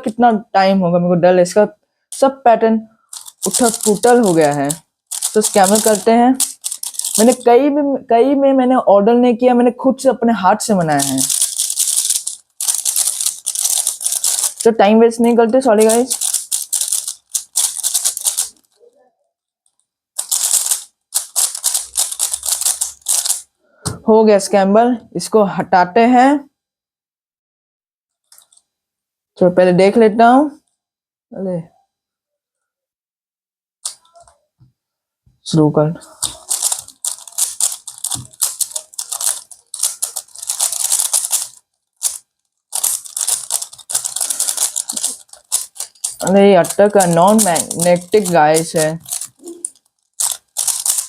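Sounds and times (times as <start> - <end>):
puzzle cube clicking: 3.1 - 7.5, 10.9 - 14.7, 15.7 - 18.8, 20.2 - 23.5, 33.8 - 34.2, 36.1 - 51.0.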